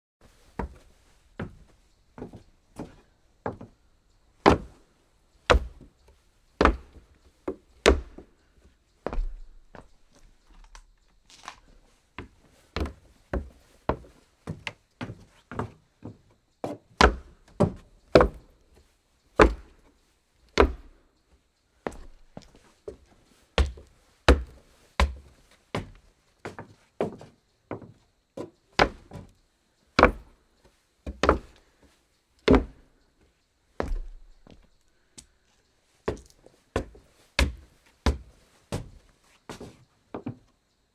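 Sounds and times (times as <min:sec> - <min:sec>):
footsteps on wooden floor: 0:00.6 - 0:03.7, 0:05.5 - 0:05.9, 0:06.6 - 0:08.3, 0:09.0 - 0:10.6, 0:23.6 - 0:28.0, 0:32.5 - 0:32.8, 0:33.8 - 0:34.7, 0:36.1 - 0:40.4.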